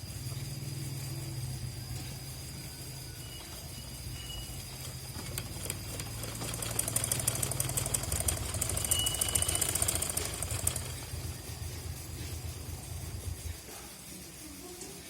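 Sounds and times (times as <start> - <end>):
low motor hum: 3.4 - 13.6
sewing machine stitching: 4.1 - 11.6.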